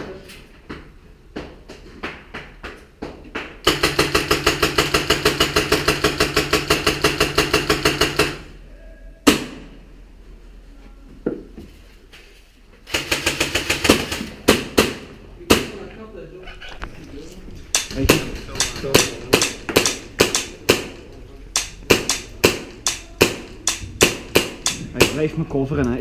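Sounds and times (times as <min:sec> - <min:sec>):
airsoft rifle firing: 0:03.6 - 0:08.5, 0:12.9 - 0:15.8, 0:17.7 - 0:25.3.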